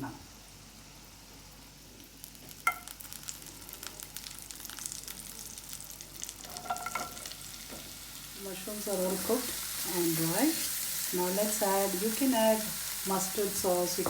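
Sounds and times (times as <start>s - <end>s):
mushrooms sizzling in a pan: 0.0s - 14.0s
utensil clinking on pan: 6.5s - 7.3s.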